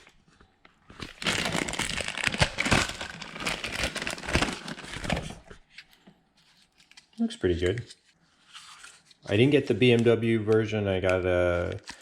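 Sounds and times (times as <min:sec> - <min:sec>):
packaging crinkling and rustling: 0:00.8 - 0:07.8.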